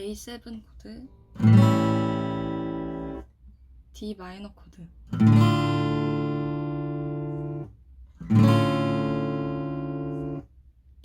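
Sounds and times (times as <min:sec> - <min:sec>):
acoustic guitar chord strummed: 0:01.3 - 0:03.3, 0:05.1 - 0:10.5.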